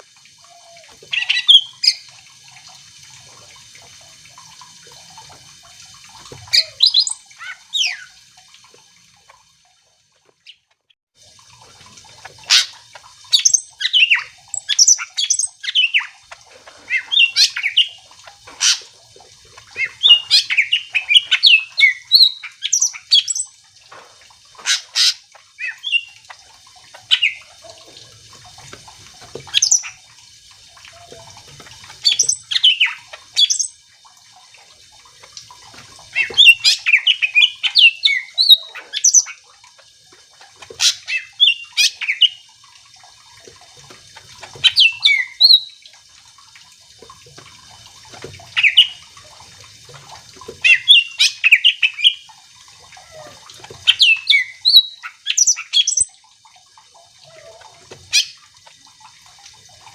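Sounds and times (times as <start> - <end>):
bird singing chirps and whistles: 6.6 - 7.2, 19.8 - 23.5, 36.2 - 39.4, 44.7 - 45.8, 53.9 - 56.1.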